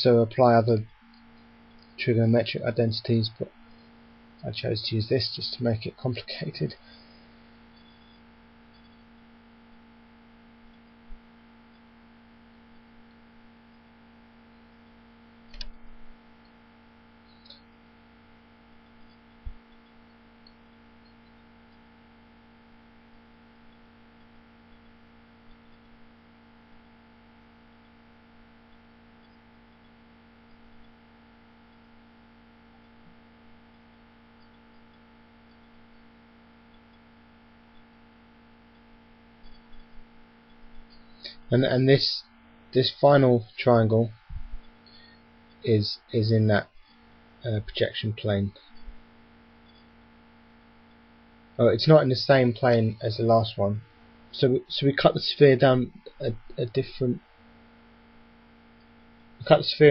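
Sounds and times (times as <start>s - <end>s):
faint electrical hum: 0.0s - 59.9s
faint clicks: 15.5s - 15.8s.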